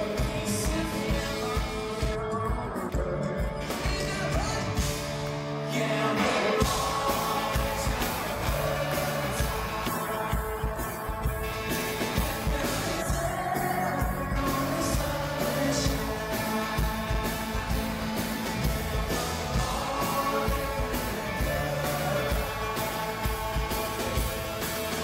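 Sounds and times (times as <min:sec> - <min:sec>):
person singing: 0:00.0 - 0:25.0
pop-rock band playing: 0:00.0 - 0:25.0
drum beat: 0:06.2 - 0:25.0.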